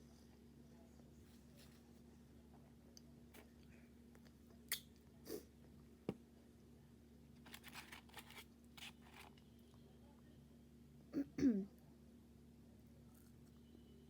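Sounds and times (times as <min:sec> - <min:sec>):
faint steady hum: 0:00.0 - 0:14.0
crunchy chewing of fried chicken: 0:07.4 - 0:09.5, 0:12.9 - 0:13.6.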